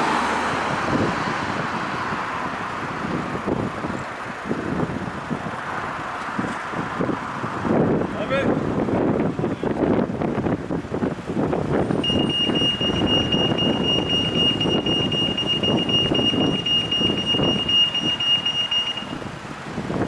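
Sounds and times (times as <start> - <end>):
low traffic rumble: 0.0 - 20.0
wind noise: 0.0 - 20.0
crossing signal beeping rapidly: 12.0 - 19.3.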